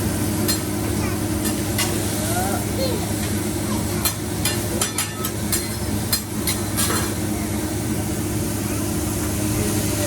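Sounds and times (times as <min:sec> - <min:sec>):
food sizzling: 0:00.0 - 0:10.0.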